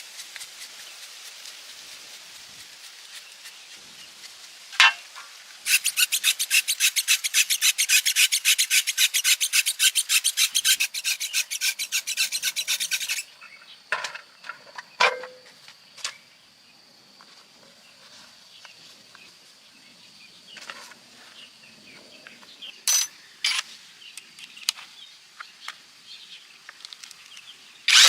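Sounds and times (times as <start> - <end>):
rasping file strokes: 5.7 - 13.3.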